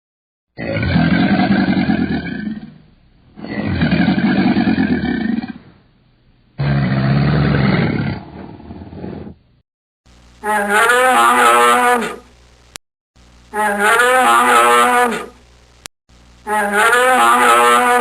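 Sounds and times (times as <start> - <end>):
loud animal calls: 0.6 - 2.8, 3.4 - 5.7, 6.6 - 9.4, 10.5 - 12.2, 13.6 - 15.4, 16.5 - 18.0.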